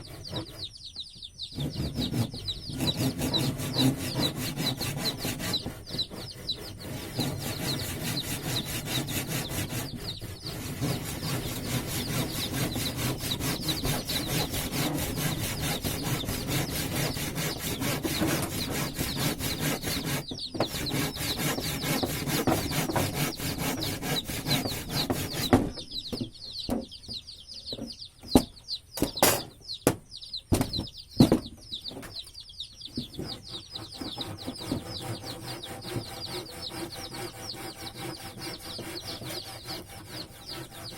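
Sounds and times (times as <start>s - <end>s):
tool rasping wood: 1.6s - 25.6s, 33.1s - 40.9s
sharp knocks on wood: 24.5s - 31.6s.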